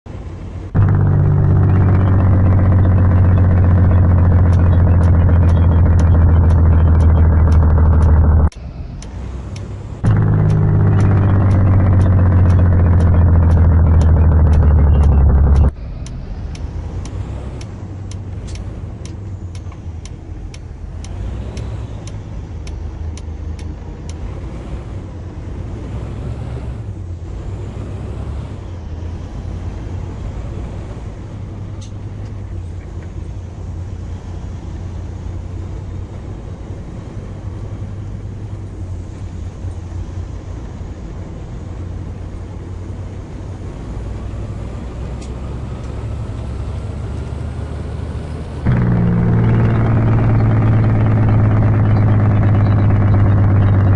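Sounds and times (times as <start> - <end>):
diesel truck engine droning: 0.1 - 53.9
faint rising whine: 0.8 - 9.4, 48.7 - 53.9
regular ticking: 0.8 - 15.8, 48.7 - 53.9.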